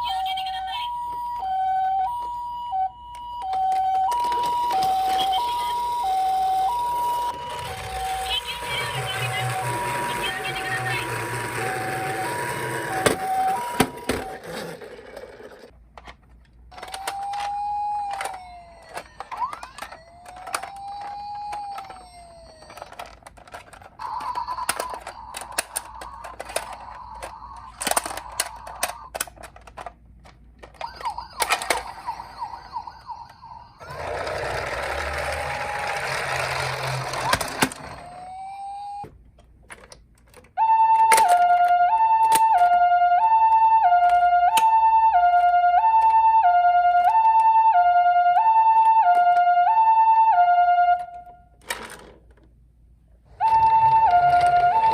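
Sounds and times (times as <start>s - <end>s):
toy electronic sirens: 0.0s - 15.7s, 16.7s - 29.3s, 30.6s - 39.1s, 40.5s - 51.8s, 53.2s - 54.9s
rattling noise: 16.7s - 33.2s.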